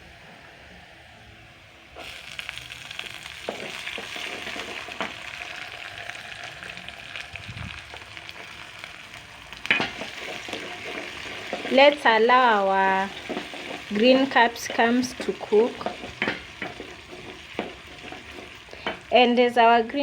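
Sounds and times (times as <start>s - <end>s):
capsicum sizzling in hot oil: 2.0s - 20.0s
spoon knocking against pan: 15.2s - 19.1s.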